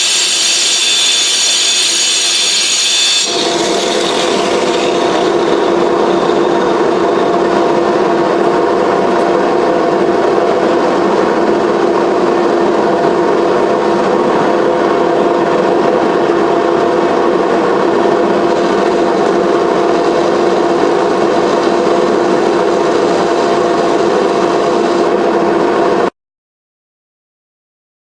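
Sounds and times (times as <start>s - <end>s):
grinding rasp on glass: 0.0s - 7.3s
grinder motor hum: 0.0s - 12.5s, 17.7s - 25.4s.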